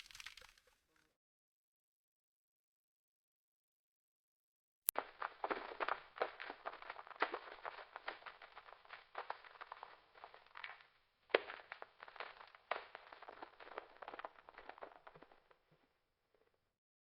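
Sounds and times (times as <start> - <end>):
crackling clicks and pops: 0.0 - 1.1, 4.9 - 16.7.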